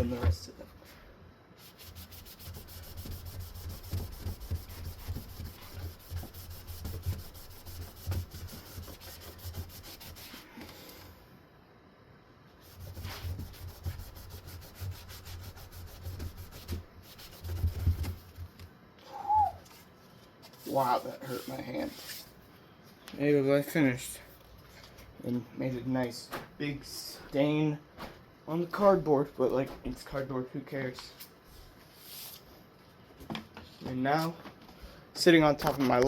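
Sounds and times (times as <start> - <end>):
wipe scrubbing fan blade: 1.6 - 10.7, 12.6 - 18.2.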